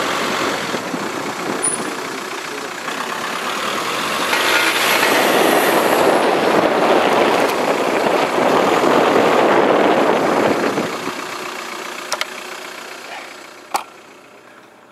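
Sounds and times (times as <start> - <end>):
car scraping grinding noise: 1.4 - 9.1.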